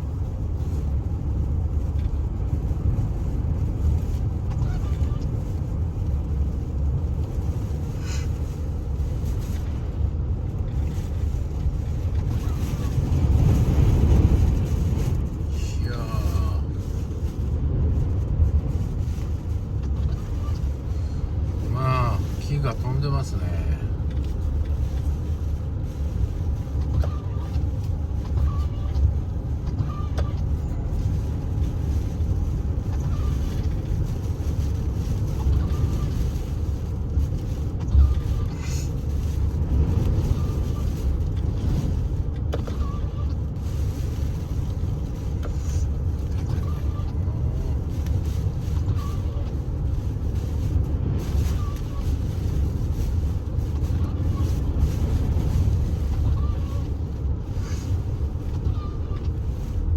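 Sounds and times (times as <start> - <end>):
strong wind buffeting microphone: 0.0 - 23.2, 23.8 - 59.9.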